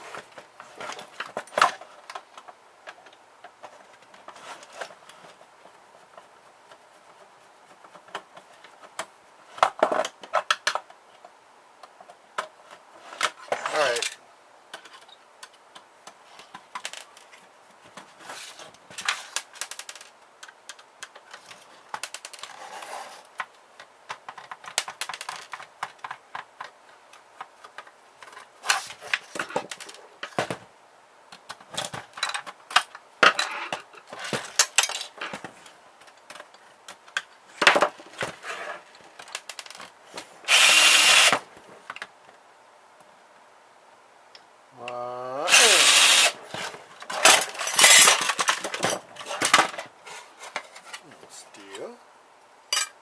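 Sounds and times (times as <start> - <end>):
plastic and metal parts clattering: 0.0 - 5.5, 7.8 - 11.0, 12.0 - 14.2, 16.4 - 30.7, 31.4 - 41.9, 45.5 - 51.1
power drill running: 40.5 - 41.4, 45.5 - 46.4.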